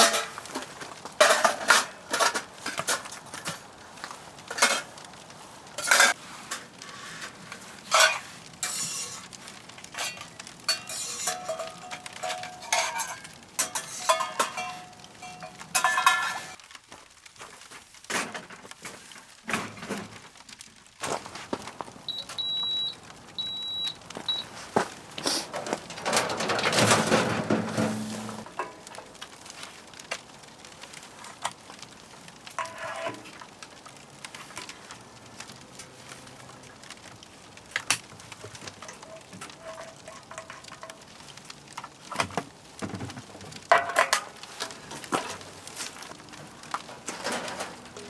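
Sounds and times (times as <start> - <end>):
dishes and cookware clinking: 0.0 - 3.7, 4.5 - 5.0, 5.8 - 6.6, 7.5 - 16.6, 25.3 - 29.0, 32.5 - 33.4, 38.8 - 41.3, 42.1 - 45.4, 46.8 - 48.0.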